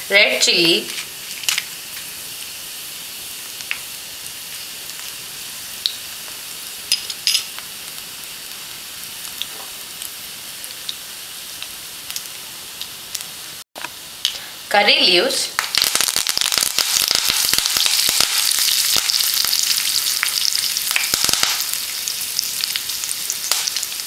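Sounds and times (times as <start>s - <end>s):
hot oil sizzling in a pan: 0.0s - 24.0s
seeds popping and crackling: 15.6s - 24.0s.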